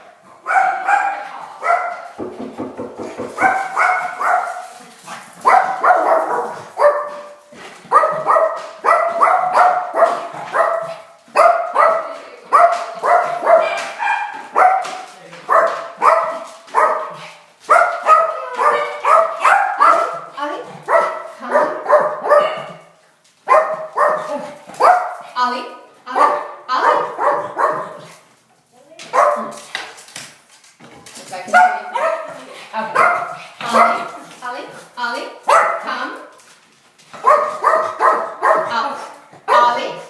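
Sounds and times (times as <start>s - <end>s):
small dog barking: 0.5s - 2.0s, 3.4s - 4.6s, 5.4s - 20.2s, 20.9s - 22.8s, 23.5s - 25.2s, 26.2s - 28.0s, 29.1s - 29.6s, 31.5s - 32.4s, 35.5s - 35.9s, 37.2s - 38.8s.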